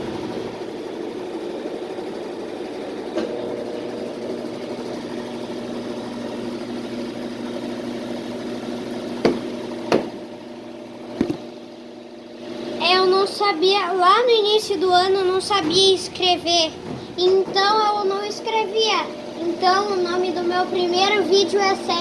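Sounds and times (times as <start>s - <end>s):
washing machine spinning: 0.0s - 22.0s
washing machine knocks: 9.1s - 10.3s.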